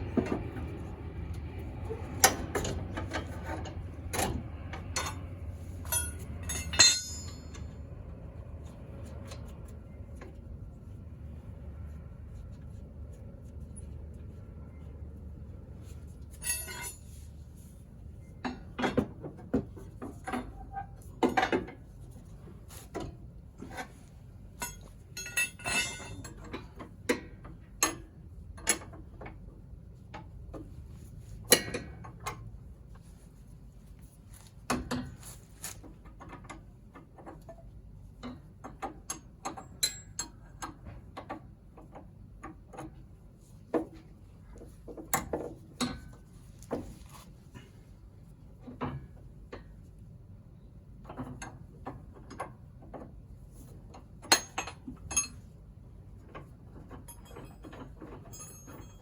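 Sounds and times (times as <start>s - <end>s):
metal tools clinking and knocking: 2.5s - 7.8s, 16.3s - 17.2s, 24.6s - 26.8s, 54.2s - 55.5s, 56.8s - 59.0s.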